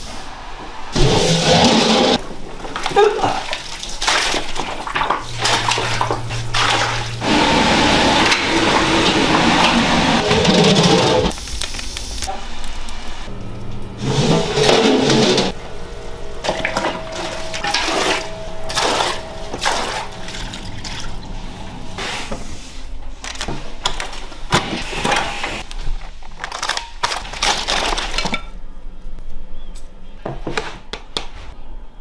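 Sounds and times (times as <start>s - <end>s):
broth sloshing and splashing: 0.9s - 11.2s, 12.6s - 22.1s.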